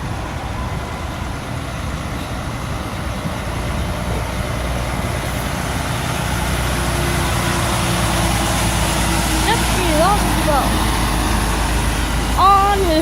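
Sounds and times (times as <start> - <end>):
heavy truck engine rumble: 0.0 - 13.0.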